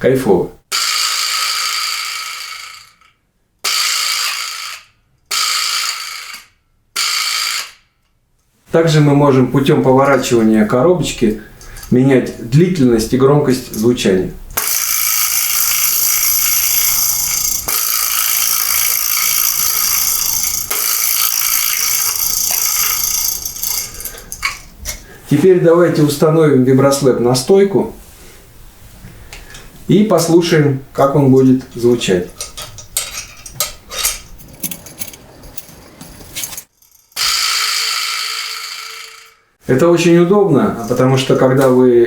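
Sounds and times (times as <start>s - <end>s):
vibraslap rattling: 14.6s - 25.1s, 32.3s - 39.5s, 40.7s - 41.3s
clicks and clanks of handling: 23.5s - 25.1s, 32.3s - 36.7s.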